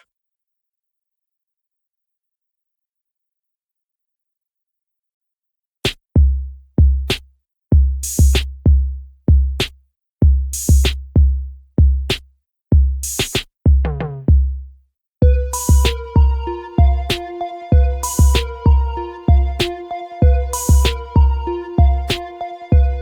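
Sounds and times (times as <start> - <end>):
deep bass drum kicks: 15.2 - 17.1
pitched synth notes: 15.2 - 23.0.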